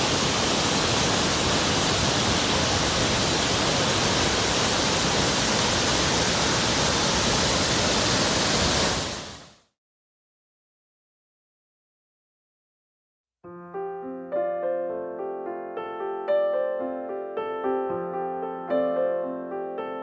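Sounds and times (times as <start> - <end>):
waterfall rushing: 0.0 - 9.6.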